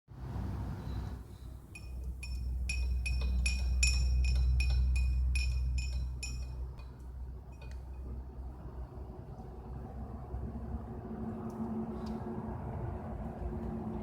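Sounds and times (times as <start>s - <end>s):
light clinking of glass: 1.8s - 8.1s.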